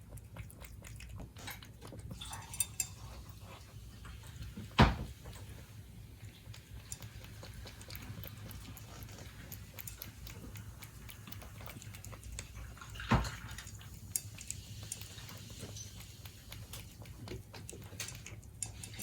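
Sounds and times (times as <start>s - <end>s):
cat chewing crunchily: 0.0s - 19.0s
thump: 4.8s - 5.1s.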